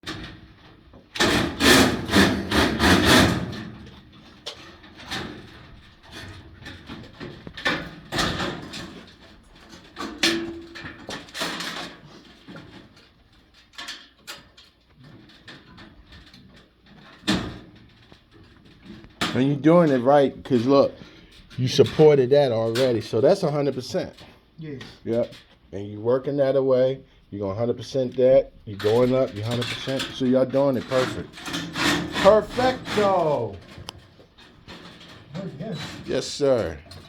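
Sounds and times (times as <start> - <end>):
scattered knocks and clicks: 0.0 - 22.1, 28.7 - 37.0
knocks and rattles of cable work: 0.0 - 25.8, 27.6 - 37.0.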